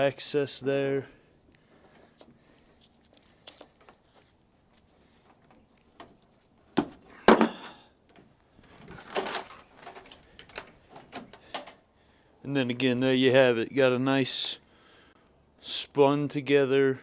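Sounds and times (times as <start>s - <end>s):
wires rustling: 0.9s - 14.5s.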